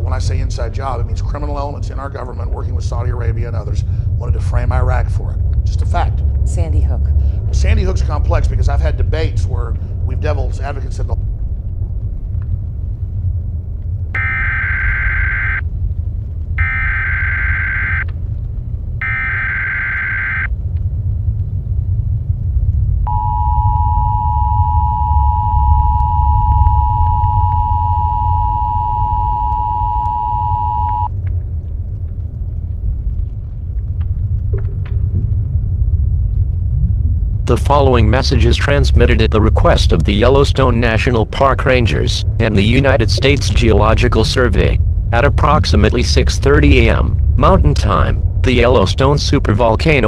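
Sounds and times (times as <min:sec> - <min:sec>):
low rumble: 0:00.0 - 0:50.0
digital data tone bursts: 0:14.2 - 0:15.6, 0:16.6 - 0:18.0, 0:19.0 - 0:20.5, 0:23.1 - 0:31.1
two-tone attention signal: 0:14.2 - 0:15.6, 0:19.0 - 0:20.5, 0:23.1 - 0:31.1.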